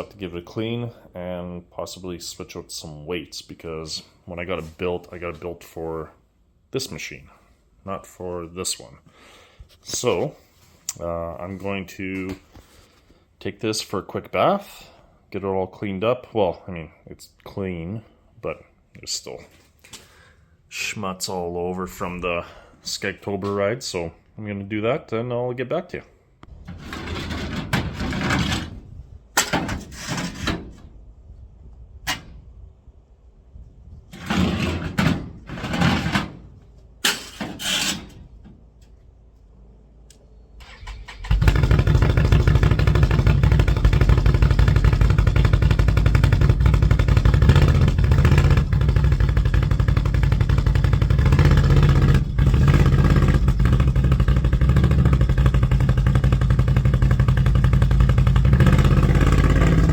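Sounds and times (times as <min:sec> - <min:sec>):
engine running: 0:40.1 - 0:59.9.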